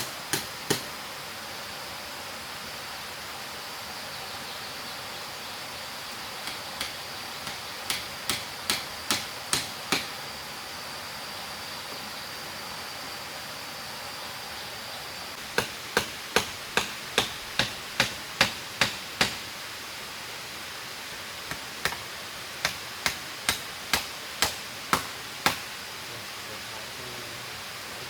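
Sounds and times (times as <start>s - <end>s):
chopping strikes: 0.0s - 0.9s, 6.4s - 10.2s, 15.6s - 19.4s, 22.6s - 25.7s
steady background hiss: 0.0s - 28.0s.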